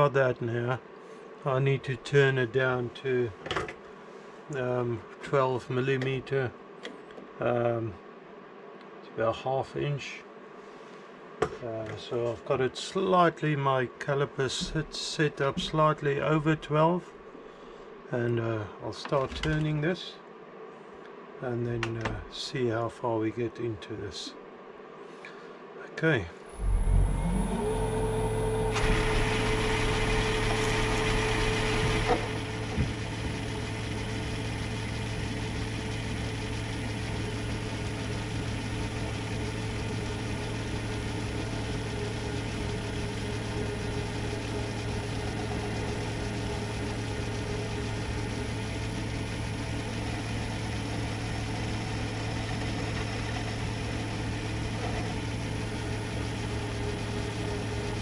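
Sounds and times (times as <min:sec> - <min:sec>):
lathe motor hum: 0:26.5 - 0:58.0.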